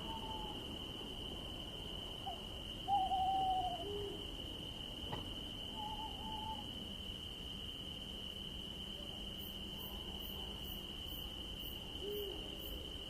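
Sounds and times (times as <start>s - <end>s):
owl hooting: 0.0s - 0.7s, 2.2s - 4.3s, 5.7s - 6.7s
high insect trill: 0.0s - 13.0s.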